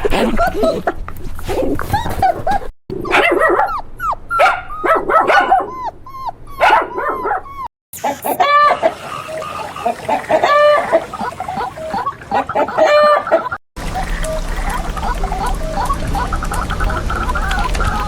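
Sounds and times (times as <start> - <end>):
puppies yipping and whimpering: 1.4 - 18.0
chickens clucking: 5.7 - 18.0
drawn-out chicken calls: 8.4 - 18.0.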